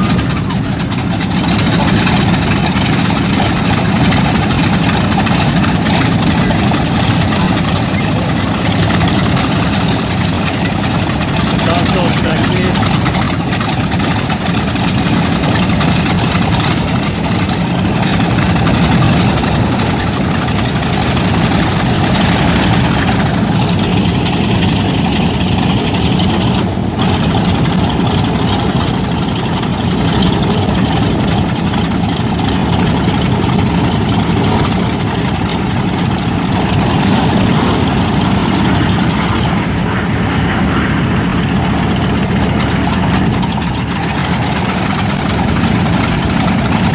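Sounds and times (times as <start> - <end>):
piston aircraft engine running: 0.0 - 46.9.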